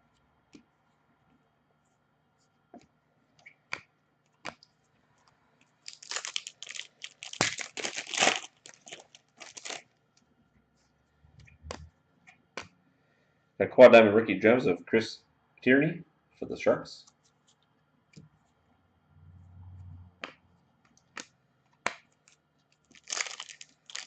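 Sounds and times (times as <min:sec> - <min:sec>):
foil wrapper tearing and crinkling: 0:05.8 - 0:09.8, 0:22.8 - 0:24.0.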